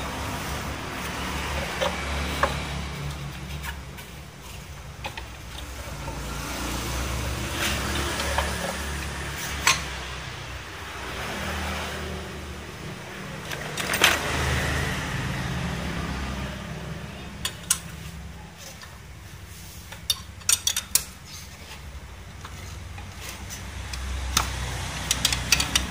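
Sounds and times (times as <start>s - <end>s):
scooter engine revving: 0.0s - 4.0s, 5.3s - 18.4s
sharp metallic clicks: 22.9s - 25.9s.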